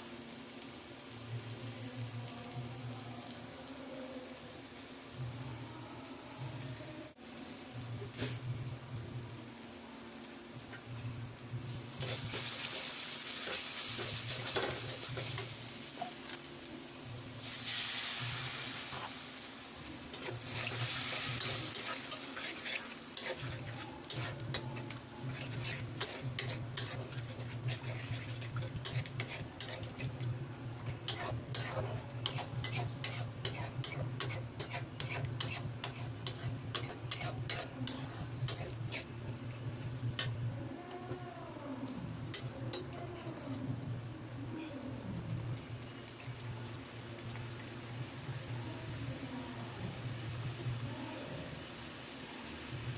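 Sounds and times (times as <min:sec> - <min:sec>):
curry sizzling in hot oil: 0:00.0 - 0:40.4, 0:42.3 - 0:44.3, 0:45.3 - 0:52.9
spoon scraping metal pan: 0:20.1 - 0:30.2, 0:31.1 - 0:39.1, 0:42.4 - 0:43.7.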